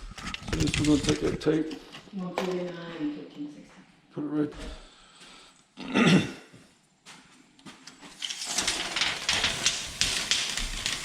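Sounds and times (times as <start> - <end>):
scratchy scraping and rustling: 0.0 - 1.5.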